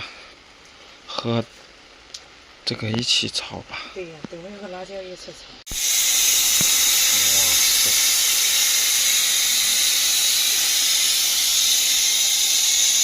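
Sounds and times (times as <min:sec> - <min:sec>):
steady rain falling: 0:00.0 - 0:05.6.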